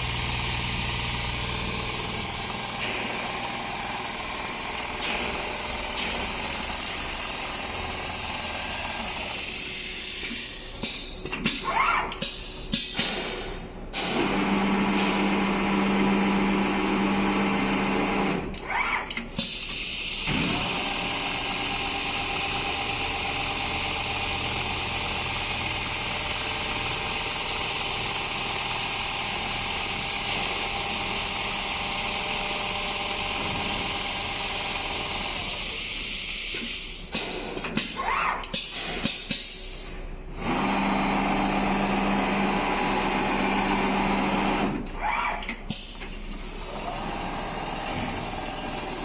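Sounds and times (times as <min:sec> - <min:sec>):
sewing machine hum: 0:00.0 - 0:09.6, 0:14.0 - 0:18.5, 0:20.4 - 0:35.7, 0:40.3 - 0:44.8, 0:46.3 - 0:49.0
sewing machine whirring: 0:00.0 - 0:10.1, 0:20.3 - 0:35.9, 0:40.3 - 0:45.4.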